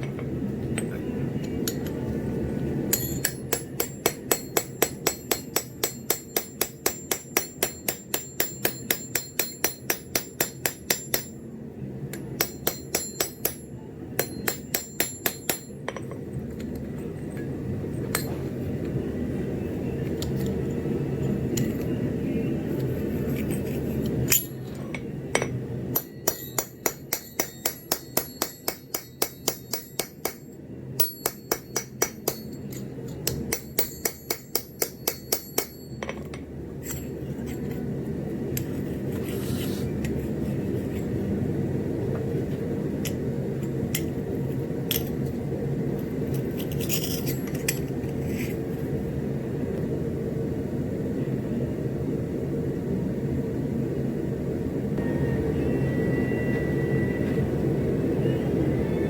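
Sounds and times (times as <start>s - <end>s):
hammer striking steel on anvil: 2.9s - 11.4s, 12.1s - 16.3s, 24.1s - 37.2s
low hum: 15.6s - 59.0s.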